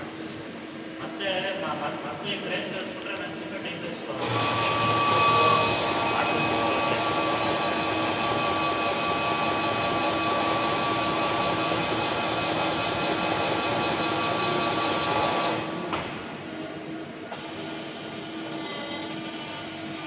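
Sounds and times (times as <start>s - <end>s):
workshop machinery whirring: 4.1s - 20.0s
high whine: 4.3s - 15.6s.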